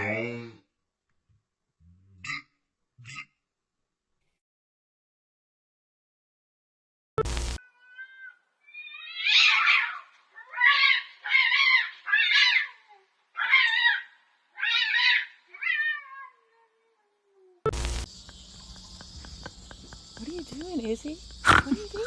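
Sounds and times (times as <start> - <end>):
cat meowing: 7.6 - 10.9, 14.6 - 17.6.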